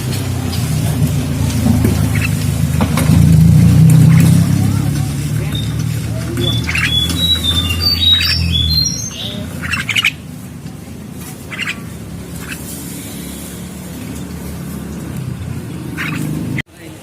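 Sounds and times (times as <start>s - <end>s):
bird raspy squawks: 2.0s - 2.4s, 4.0s - 10.3s, 11.4s - 13.8s, 15.8s - 16.6s
bird whistled notes: 5.4s - 10.2s.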